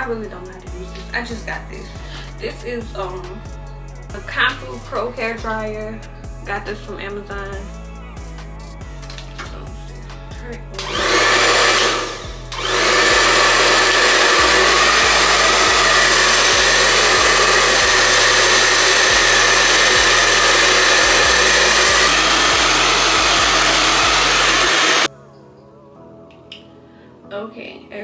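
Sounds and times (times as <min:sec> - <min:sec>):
hair dryer blowing: 0:10.8 - 0:25.1.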